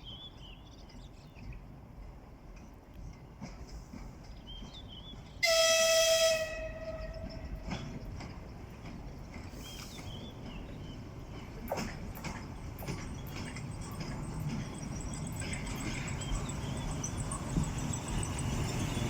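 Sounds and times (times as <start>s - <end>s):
locomotive horn blast: 5.4s - 7.4s.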